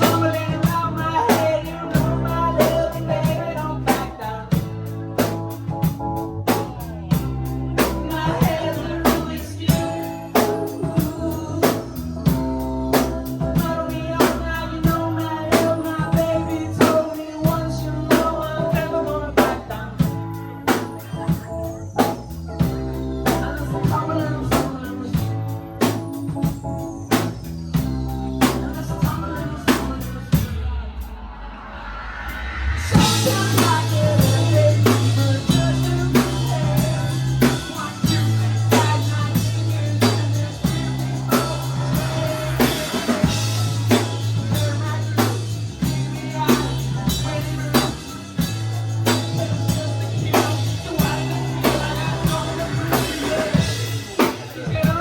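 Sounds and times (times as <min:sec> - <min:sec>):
live rock band playing: 0:00.0 - 0:31.1, 0:32.4 - 0:55.0
held bass notes: 0:00.0 - 0:31.5, 0:32.3 - 0:55.0
drum kit hits: 0:32.3 - 0:55.0.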